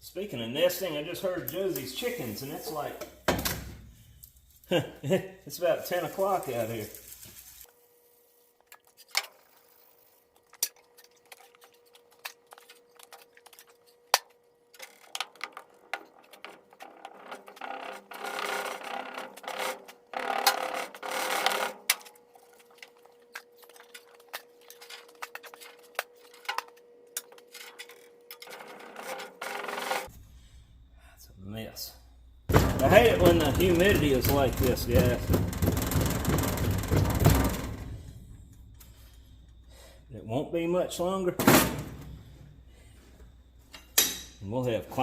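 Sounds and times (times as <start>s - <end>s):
scraping and rubbing: 14.8s - 30.2s, 32.5s - 38.1s.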